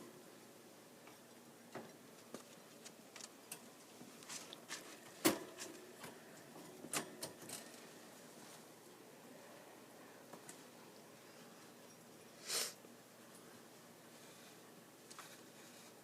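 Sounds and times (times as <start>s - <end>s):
rats moving in a cage: 1.7s - 8.7s.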